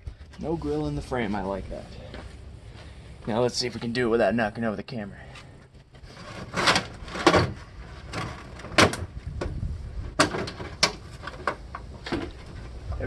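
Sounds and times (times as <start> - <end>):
television parts knocking and scraping: 6.0 - 9.6, 10.2 - 12.8.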